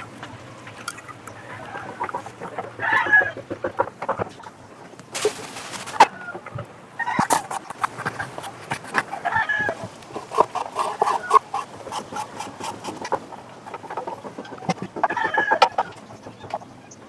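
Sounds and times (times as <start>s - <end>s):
chickens clucking: 0.0s - 17.0s.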